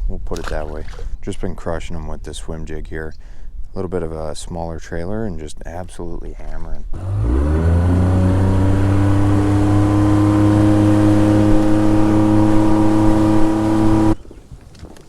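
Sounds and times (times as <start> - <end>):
outboard motor running: 6.9 - 14.2.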